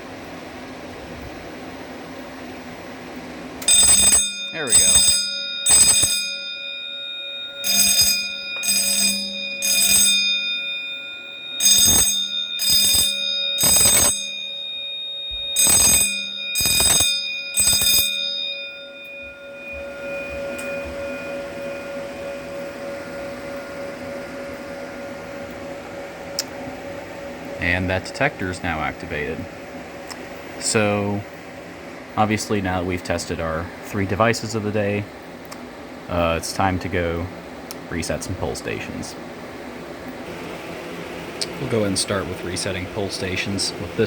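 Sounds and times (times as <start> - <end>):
steady hum: 0.0 - 44.0
fire alarm bell ringing: 3.6 - 31.4, 40.2 - 44.0.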